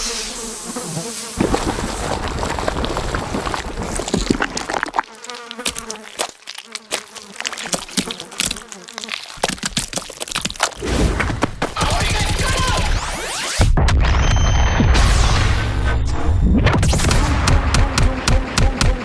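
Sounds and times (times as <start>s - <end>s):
insect-like buzzing: 0.0s - 9.6s.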